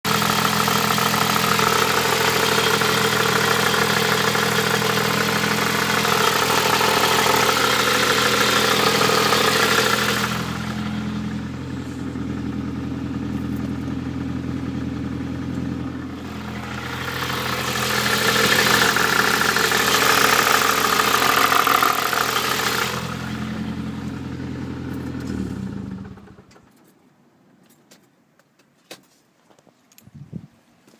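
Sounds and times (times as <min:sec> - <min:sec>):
car engine idling: 0:00.0 - 0:26.8
engine hiss: 0:00.1 - 0:12.6, 0:16.0 - 0:24.4.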